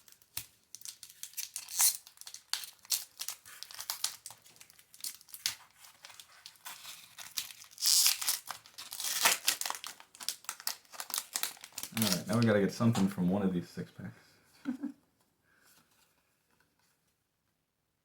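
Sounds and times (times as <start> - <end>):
foil wrapper ripping: 0.0 - 12.6
foil wrapper crinkling: 0.0 - 13.1.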